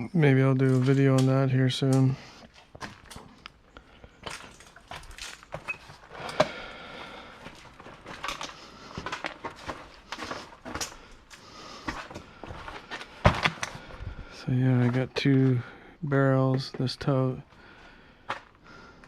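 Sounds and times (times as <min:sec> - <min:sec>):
plastic totes knocking and clunking: 0:04.2 - 0:14.2.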